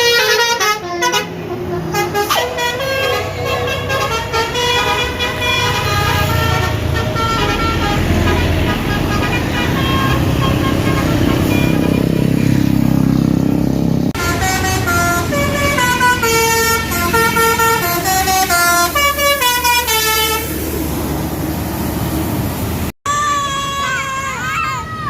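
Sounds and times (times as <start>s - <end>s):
horn playing melody: 0.0s - 12.3s, 14.2s - 20.7s
bus engine rumbling: 0.0s - 25.0s.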